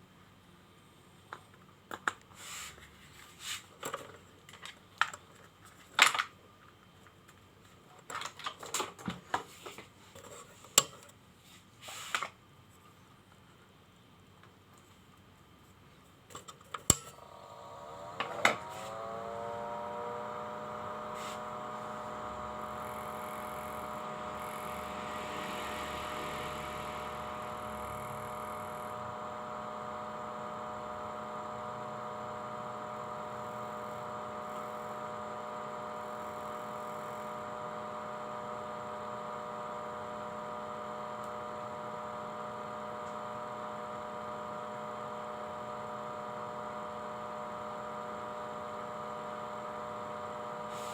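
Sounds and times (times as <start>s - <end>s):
small electric motor whining: 17.2s - 50.9s.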